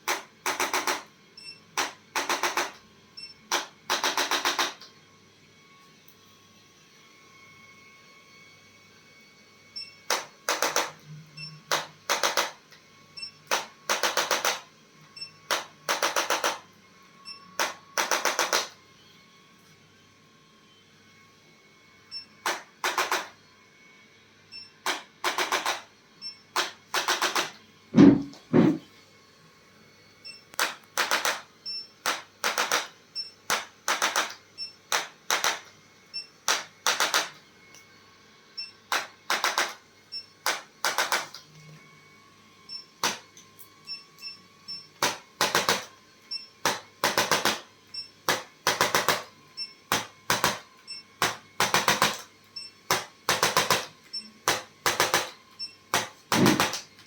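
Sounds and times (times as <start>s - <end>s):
bursts of rapid clicks: 0.0s - 1.1s, 1.8s - 2.8s, 3.5s - 4.8s, 10.1s - 11.0s, 11.7s - 12.6s, 13.4s - 14.6s, 15.5s - 16.6s, 17.6s - 18.7s, 22.4s - 23.3s, 24.8s - 25.9s, 26.6s - 27.6s, 30.6s - 35.7s, 36.5s - 37.4s, 38.9s - 39.8s, 40.4s - 41.4s, 45.0s - 45.9s, 46.6s - 47.6s, 52.9s - 53.9s, 54.5s - 56.9s
low thumps: 28.0s - 28.8s.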